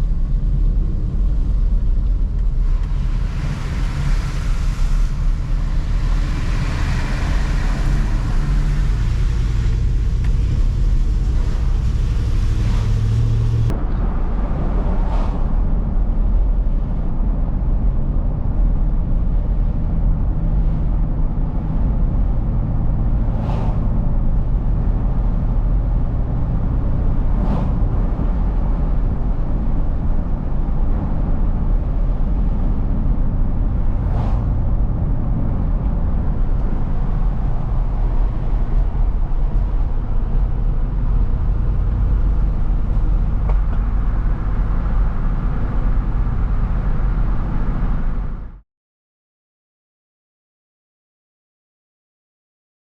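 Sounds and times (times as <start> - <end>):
passing vehicles whooshing: 0.0 - 48.6
vehicle rumble on road: 0.0 - 48.6.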